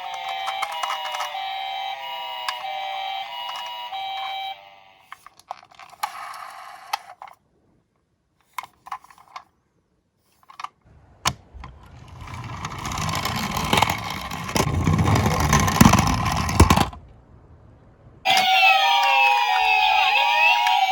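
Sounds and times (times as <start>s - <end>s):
toy cars clicking: 0.0s - 7.4s, 8.4s - 9.5s, 10.3s - 17.0s
toy cars rolling down slope: 0.0s - 7.4s, 10.3s - 17.0s.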